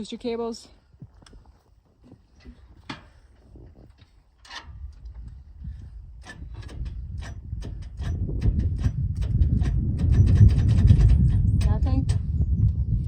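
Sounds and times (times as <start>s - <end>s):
metal cable clamps clicking: 6.2s - 12.2s.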